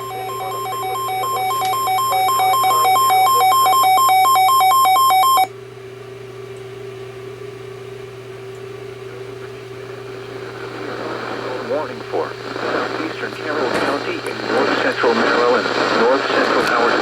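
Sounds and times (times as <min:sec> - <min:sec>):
radio hiss: 0:00.0 - 0:00.8, 0:02.4 - 0:03.6, 0:09.1 - 0:17.0
electronic two-tone warble alarm: 0:00.0 - 0:05.5.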